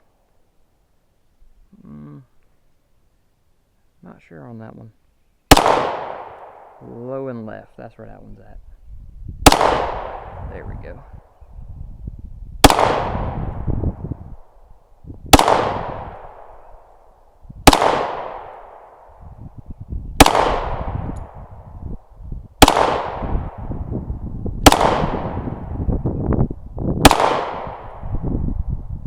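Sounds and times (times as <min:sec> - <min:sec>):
pistol shots with echo: 0:05.5 - 0:06.8, 0:09.4 - 0:10.4, 0:12.6 - 0:13.5, 0:15.3 - 0:16.6, 0:17.6 - 0:19.1, 0:20.2 - 0:21.4, 0:22.6 - 0:23.6, 0:24.6 - 0:25.8, 0:27.0 - 0:28.1.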